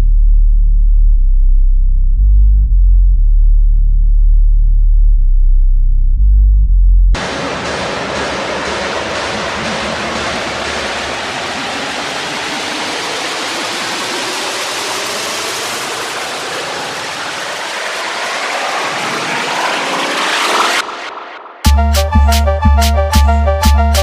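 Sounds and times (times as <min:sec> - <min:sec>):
white-noise riser hiss: 0:07.2 - 0:21.8
heavy pulsing bass beat: 0:21.6 - 0:24.0.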